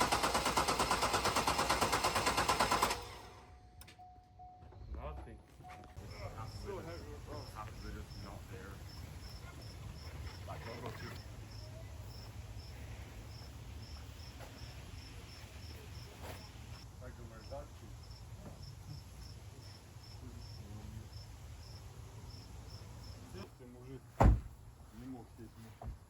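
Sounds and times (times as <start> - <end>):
cricket chirping: 6.0 - 23.5.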